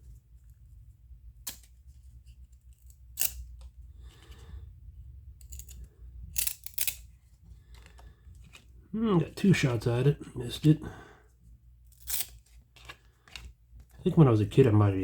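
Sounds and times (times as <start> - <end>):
cards clicking and snapping: 1.4 - 1.9, 2.6 - 4.4, 5.4 - 8.7, 11.9 - 14.0.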